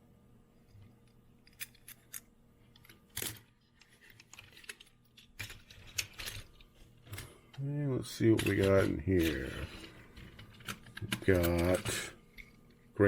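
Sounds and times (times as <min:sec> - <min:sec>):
metal toy cars clicking: 0:02.8 - 0:07.3, 0:08.2 - 0:12.1.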